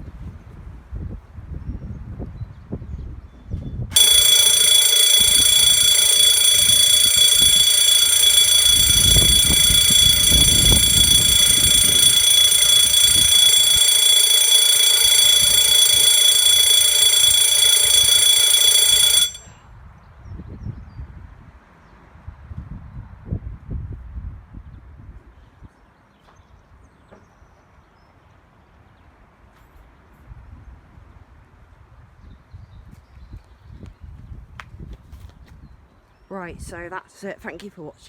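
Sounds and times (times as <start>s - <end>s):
alarm bell ringing: 3.9s - 19.5s.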